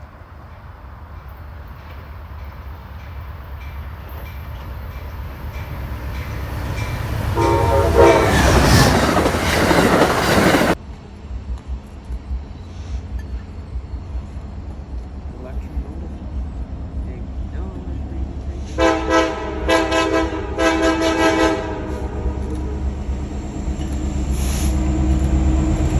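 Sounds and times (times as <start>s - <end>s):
rush of passing train: 0.0s - 25.9s
train rumbling: 0.0s - 25.9s
wheels clicking over rail joints: 1.7s - 10.8s
train horn: 6.2s - 10.8s, 18.7s - 23.0s.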